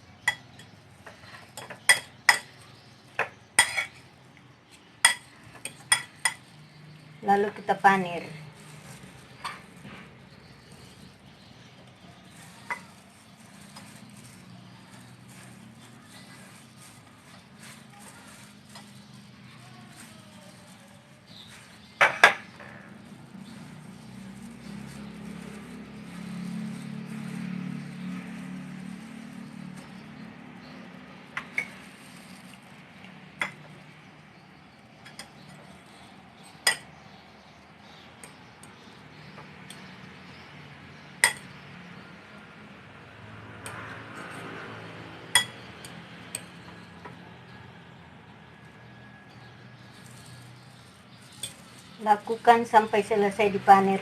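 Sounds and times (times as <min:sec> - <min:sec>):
dishes and utensils clinking: 0:03.2 - 0:04.0
bread rustling in breadcrumbs: 0:08.0 - 0:22.0, 0:22.8 - 0:34.4, 0:49.6 - 0:53.1.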